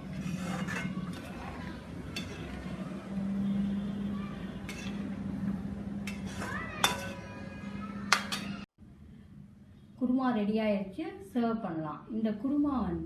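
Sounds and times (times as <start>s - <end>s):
kitchen utensils clinking: 0.0s - 2.8s, 4.6s - 5.3s, 6.0s - 7.4s, 8.1s - 8.7s.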